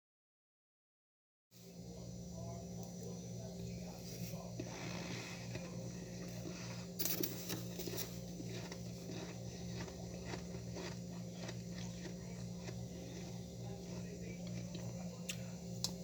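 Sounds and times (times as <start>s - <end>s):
low steady hum: 1.6s - 16.0s
frost crunching: 3.9s - 16.0s.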